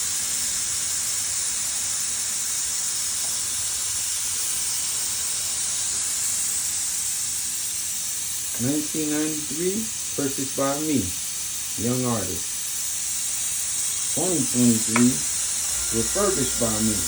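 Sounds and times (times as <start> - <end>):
steady high hiss: 0.0 - 17.0.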